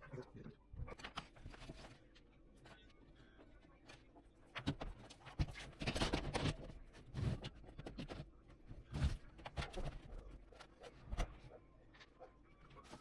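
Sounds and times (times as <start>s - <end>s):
clicks and knocks of computer parts: 4.5s - 8.2s.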